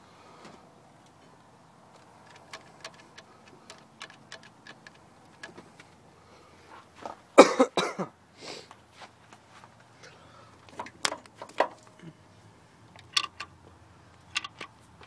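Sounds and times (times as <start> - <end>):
light clicks and taps: 1.9 - 6.0
person coughing loudly: 7.4 - 8.1.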